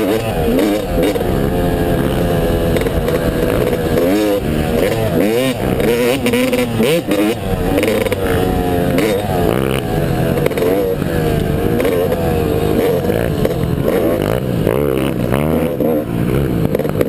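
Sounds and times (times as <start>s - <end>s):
motocross bike engines revving: 0.0s - 17.0s.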